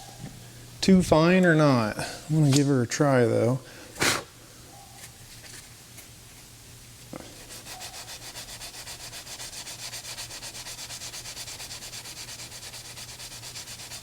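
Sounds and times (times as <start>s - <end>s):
hand sanding metal rim: 7.4s - 14.0s.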